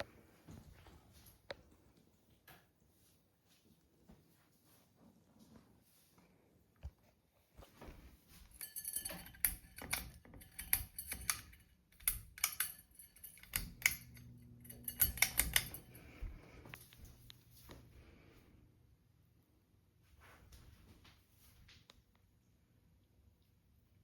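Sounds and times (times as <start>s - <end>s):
pull-chain switch clicking: 8.6s - 16.0s
fan motor hum: 8.6s - 18.3s.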